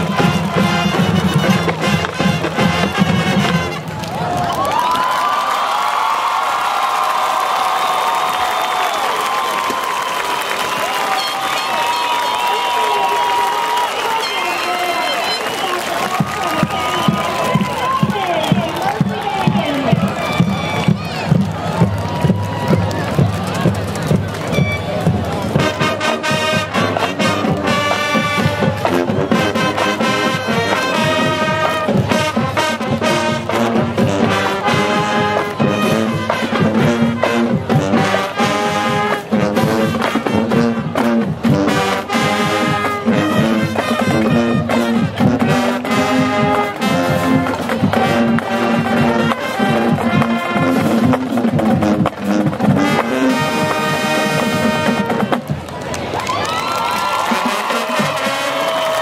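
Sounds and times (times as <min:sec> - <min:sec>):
drum-line strikes: 0:00.0 - 0:04.0, 0:16.0 - 0:55.9, 0:56.9 - 0:59.0
trumpets and trombones: 0:00.0 - 0:04.2, 0:10.9 - 0:55.6, 0:57.0 - 0:59.0.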